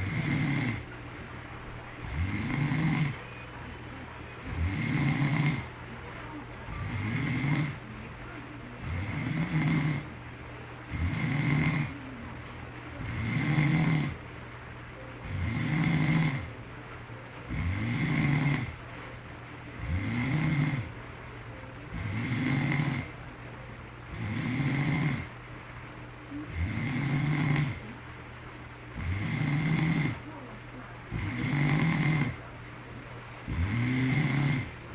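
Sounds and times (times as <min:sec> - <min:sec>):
man snoring: 0:00.0 - 0:00.9, 0:02.0 - 0:03.2, 0:04.4 - 0:05.8, 0:06.7 - 0:07.9, 0:08.8 - 0:10.1, 0:10.9 - 0:12.0, 0:13.0 - 0:14.2, 0:15.2 - 0:16.5, 0:17.5 - 0:18.8, 0:19.8 - 0:21.0, 0:21.9 - 0:23.2, 0:24.1 - 0:25.3, 0:26.4 - 0:28.0, 0:29.0 - 0:30.3, 0:31.1 - 0:32.4, 0:33.4 - 0:34.8.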